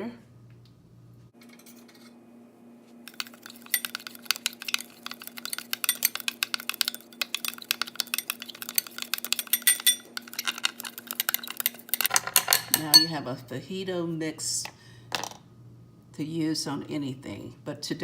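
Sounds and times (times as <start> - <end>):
steady low hum: 0.0 - 18.0
utensil clinking against bowl: 3.1 - 13.2.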